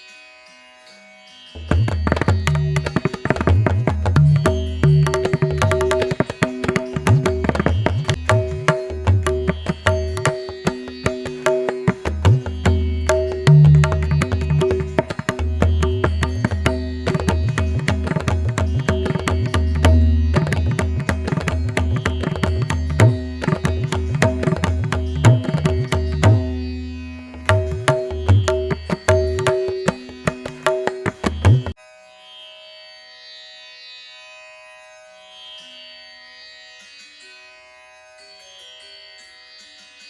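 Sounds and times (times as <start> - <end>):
plucked strings: 1.6 - 31.8.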